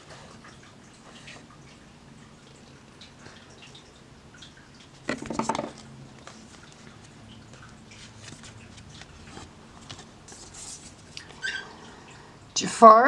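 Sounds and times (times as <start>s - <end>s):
cardboard boards being shuffled: 8.0s - 11.0s
scraping rustle: 8.0s - 11.1s.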